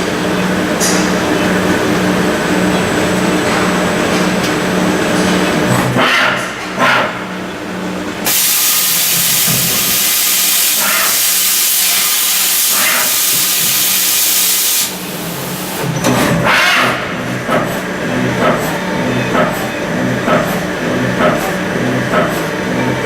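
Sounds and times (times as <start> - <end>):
loud steady hiss: 8.2 - 15.8.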